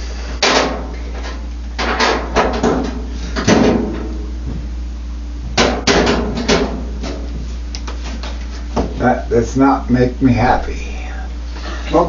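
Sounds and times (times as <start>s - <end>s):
steady low hum: 0.0s - 12.0s
tools knocking and clattering: 0.4s - 4.1s.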